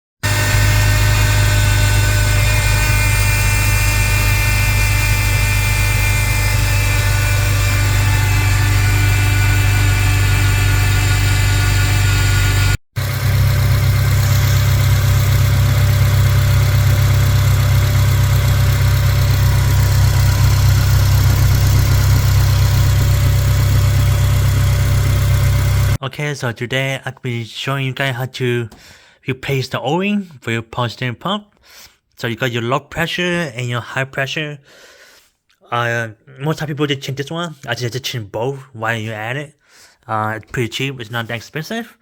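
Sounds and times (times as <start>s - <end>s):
high-pitched pump whine: 0.2s - 26.0s
car engine idling: 0.3s - 26.0s.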